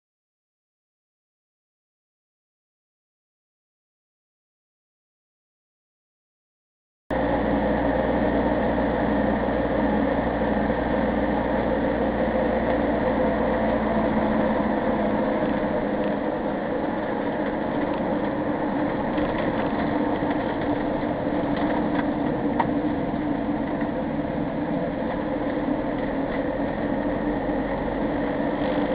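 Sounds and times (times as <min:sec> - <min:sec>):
engine and road noise drone: 0:07.1 - 0:28.9.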